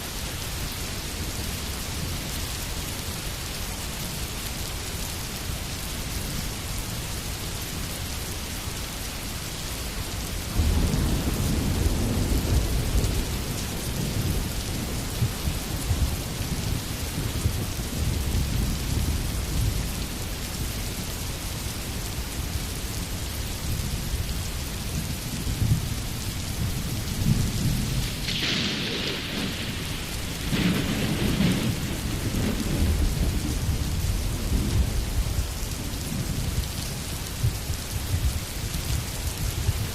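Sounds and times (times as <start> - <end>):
steady rainfall: 0.0 - 39.9
low rolls of thunder: 10.5 - 19.9, 25.2 - 36.8.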